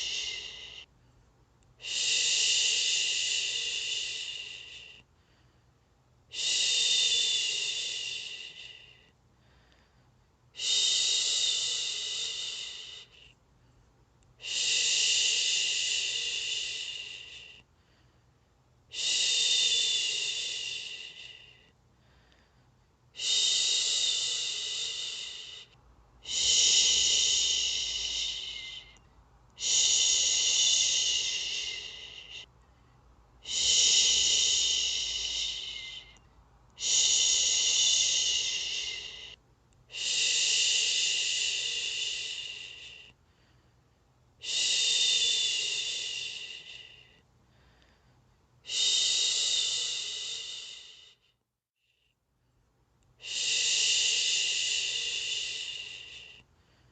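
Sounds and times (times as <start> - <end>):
person shushing: 0.0 - 0.8, 23.2 - 29.0, 29.6 - 32.5, 33.4 - 36.2, 36.8 - 43.1.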